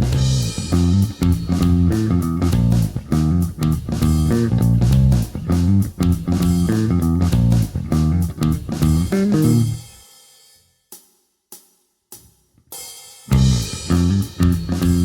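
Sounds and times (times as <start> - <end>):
electric bass picked notes: 0.0 - 9.8, 13.3 - 15.0.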